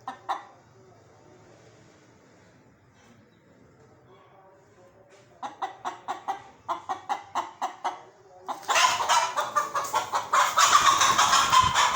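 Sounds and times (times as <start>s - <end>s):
chicken clucking: 0.0s - 0.6s, 5.2s - 11.9s.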